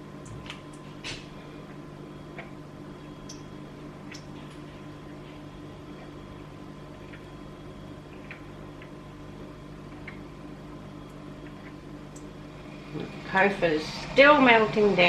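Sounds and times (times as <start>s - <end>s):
faint steady whine: 0.0s - 15.0s
kitchen appliance humming: 0.0s - 15.0s.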